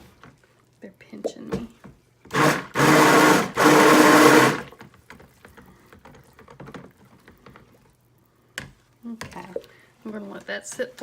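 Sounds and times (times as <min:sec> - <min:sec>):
stick blender whirring: 0:02.3 - 0:04.9.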